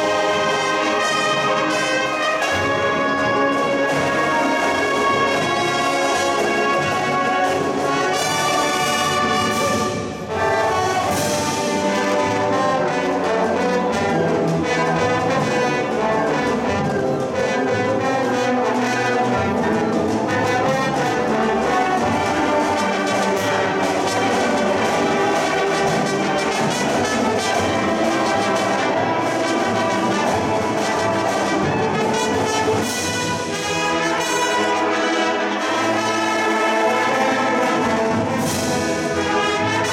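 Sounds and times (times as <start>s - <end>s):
marching band playing: 0.0s - 39.9s.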